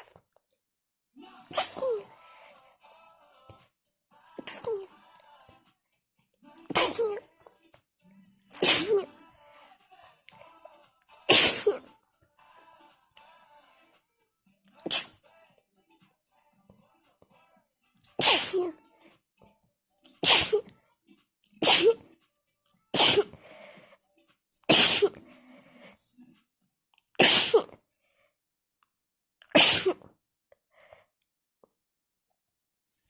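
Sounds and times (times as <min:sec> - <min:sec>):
woman sneezing: 0:01.5 - 0:02.1, 0:04.4 - 0:04.9, 0:06.7 - 0:07.2, 0:08.5 - 0:09.1, 0:11.3 - 0:11.9, 0:14.8 - 0:15.2, 0:18.2 - 0:18.8, 0:20.2 - 0:20.7, 0:21.6 - 0:22.1, 0:22.9 - 0:23.4, 0:24.7 - 0:25.2, 0:27.2 - 0:27.8, 0:29.5 - 0:30.1
short breaths: 0:23.2 - 0:24.0, 0:25.1 - 0:26.0, 0:30.7 - 0:31.1.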